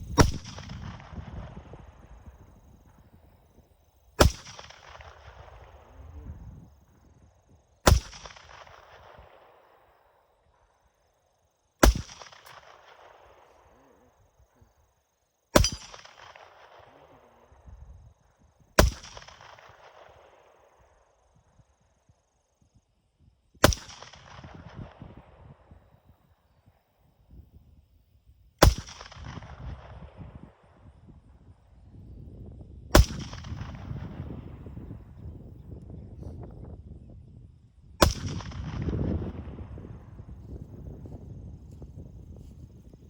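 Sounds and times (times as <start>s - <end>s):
handgun shots with echo: 15.6s - 16.8s, 33.0s - 34.2s.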